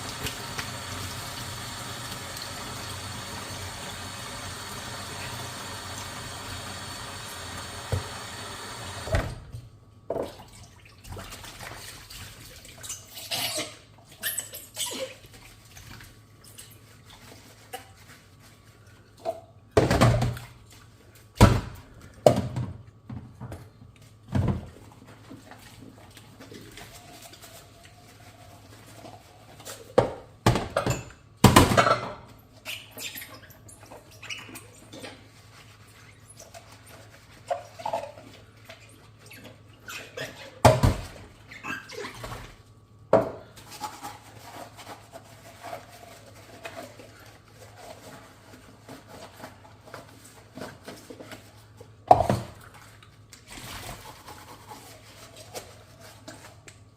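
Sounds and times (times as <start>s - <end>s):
dishes being scrubbed: 32.6s - 40.6s, 43.4s - 56.8s.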